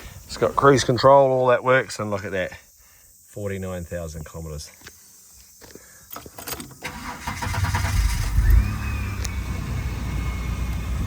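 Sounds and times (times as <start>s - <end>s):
starter motor cranking: 6.8s - 9.4s.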